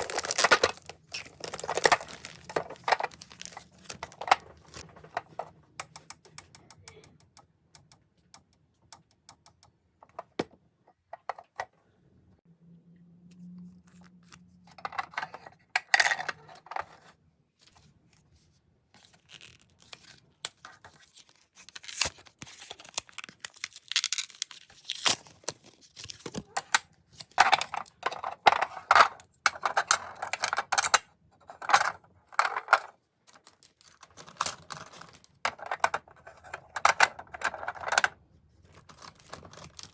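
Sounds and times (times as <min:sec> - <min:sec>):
packaging being torn: 0:00.0 - 0:04.0, 0:21.7 - 0:26.4.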